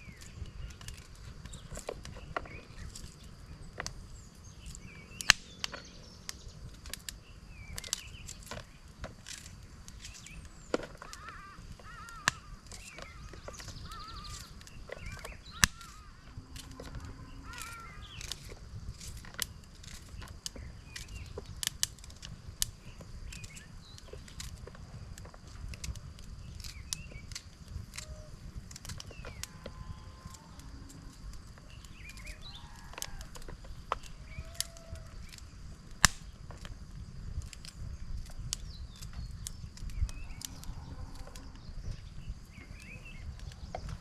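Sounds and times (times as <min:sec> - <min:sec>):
chirping bird calls: 0:10.0 - 0:18.6, 0:29.0 - 0:35.5.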